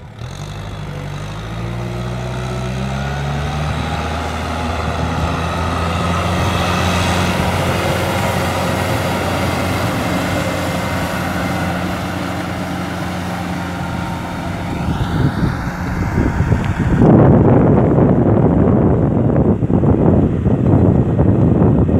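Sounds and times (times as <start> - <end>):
tractor diesel engine running: 0.0 - 21.9.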